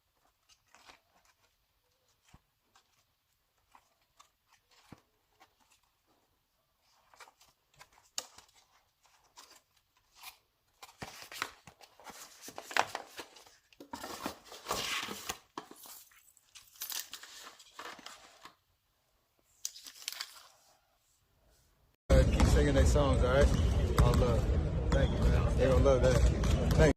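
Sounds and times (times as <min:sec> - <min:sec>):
packaging crinkling and tearing: 0:07.1 - 0:18.5, 0:19.6 - 0:20.6.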